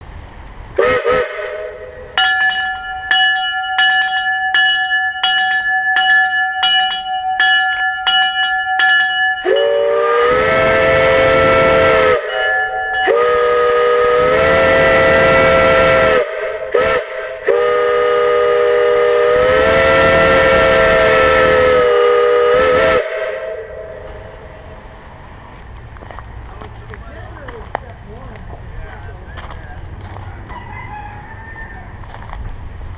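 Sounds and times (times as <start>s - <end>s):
steam whistle: 0.8s - 2.2s, 9.4s - 25.5s
bell ringing: 2.2s - 9.8s, 12.2s - 13.3s, 23.4s - 32.9s.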